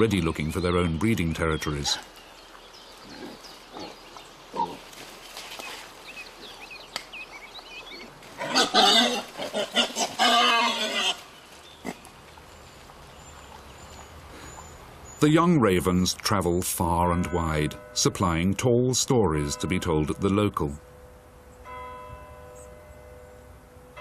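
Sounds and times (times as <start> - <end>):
animal calls: 7.9 - 12.1.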